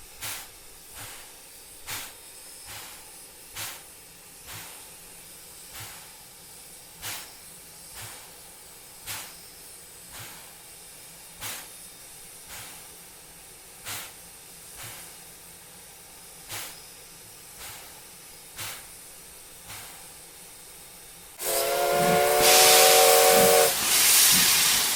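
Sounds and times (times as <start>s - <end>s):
steam locomotive hissing: 0.0s - 24.9s
steam puffs: 0.0s - 24.9s
steam whistle chord: 21.4s - 23.9s.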